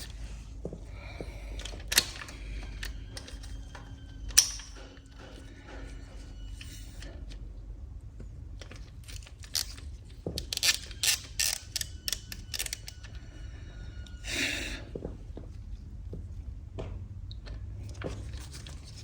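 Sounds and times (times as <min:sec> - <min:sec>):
metal tools clicking: 0:04.3 - 0:04.8.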